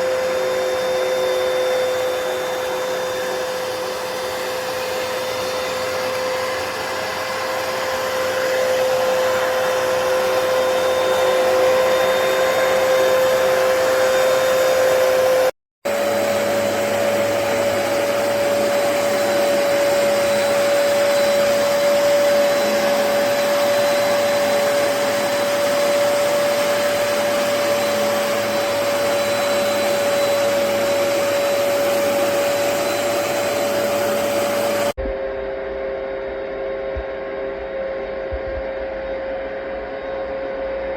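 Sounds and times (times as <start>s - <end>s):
carpet cleaner motor whining: 0.0s - 40.9s.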